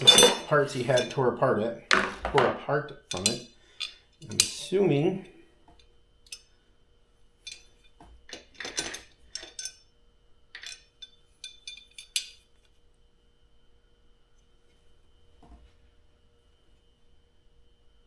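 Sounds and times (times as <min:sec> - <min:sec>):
loose parts clinking: 0:00.0 - 0:05.3, 0:07.4 - 0:09.9, 0:10.5 - 0:12.7.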